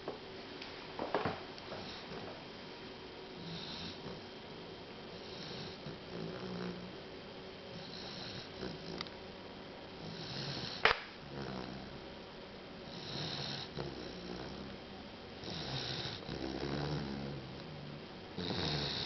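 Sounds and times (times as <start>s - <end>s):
puppy snoring: 1.7s - 2.4s, 3.4s - 4.4s, 5.0s - 7.1s, 7.7s - 9.2s, 10.0s - 12.1s, 12.8s - 19.0s.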